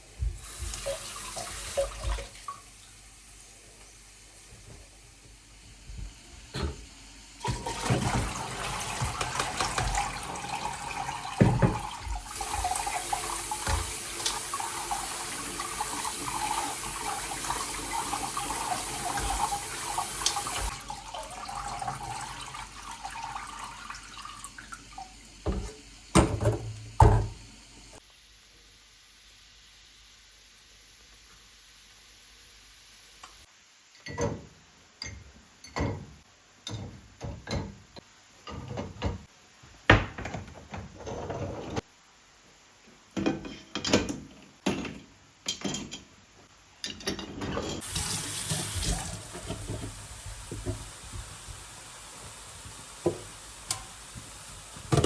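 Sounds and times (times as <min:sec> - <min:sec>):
tap water running into sink: 0:00.2 - 0:03.0, 0:06.0 - 0:27.5, 0:47.8 - 0:55.0.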